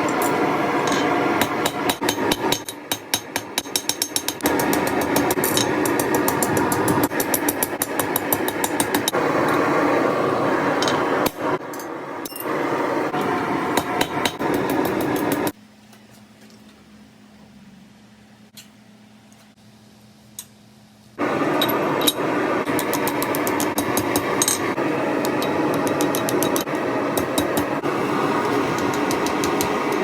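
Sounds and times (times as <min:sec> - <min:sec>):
steady rushing noise: 0:04.4 - 0:15.5.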